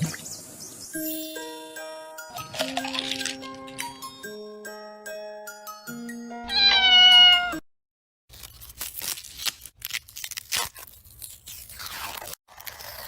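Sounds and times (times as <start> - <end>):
cat meowing: 6.4 - 7.6.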